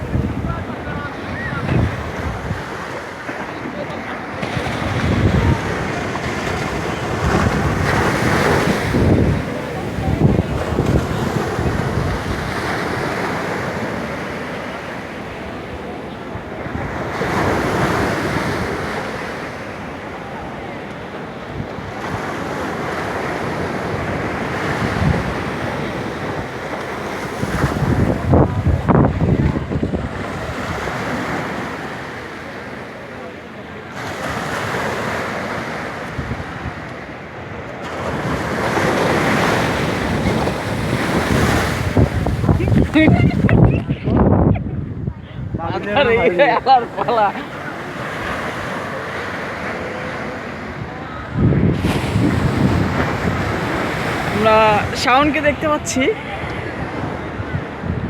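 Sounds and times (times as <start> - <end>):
wind buffeting microphone: 0.0 - 14.2, 23.0 - 31.3, 38.0 - 49.0, 50.6 - 58.0
waves washing up a beach: 0.0 - 58.0.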